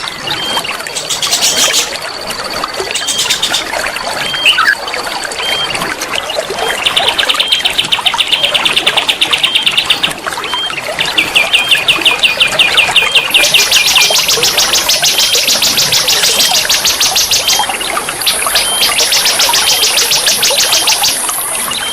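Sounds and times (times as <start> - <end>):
flowing water: 0.0 - 21.9
songbird singing: 2.9 - 5.8, 6.8 - 21.9.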